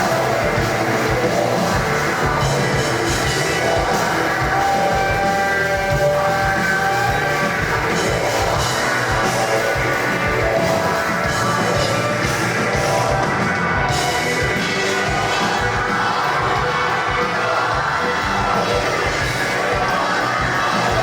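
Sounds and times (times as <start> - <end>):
drum kit pounding: 0.0 - 21.0.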